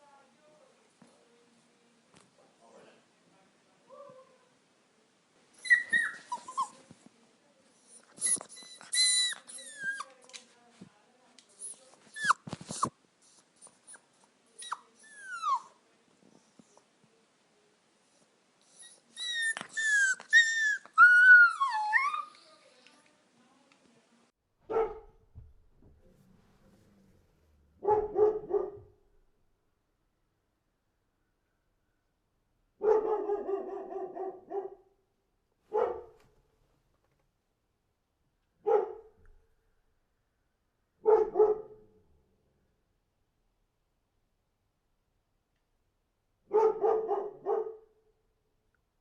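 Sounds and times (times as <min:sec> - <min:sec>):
dog whimpering: 0:05.6 - 0:06.8, 0:07.9 - 0:10.2, 0:18.7 - 0:22.7
dog barking: 0:24.7 - 0:25.2, 0:27.8 - 0:28.9, 0:32.8 - 0:34.9, 0:35.7 - 0:36.2, 0:38.6 - 0:39.2, 0:41.0 - 0:41.8, 0:46.5 - 0:47.9.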